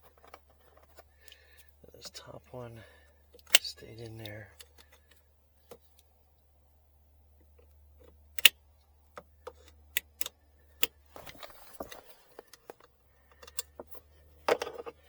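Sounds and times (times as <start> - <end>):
rustling and rattling: 0.0 - 1.1, 11.1 - 12.9
plastic clips snapping into place: 8.4 - 8.6.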